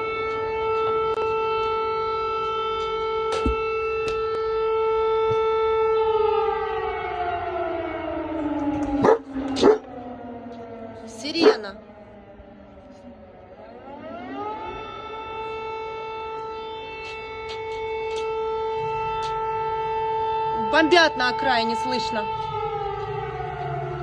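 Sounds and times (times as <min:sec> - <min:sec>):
air-raid siren winding down: 0:00.0 - 0:24.0
dog barking: 0:09.0 - 0:09.9, 0:11.4 - 0:11.7.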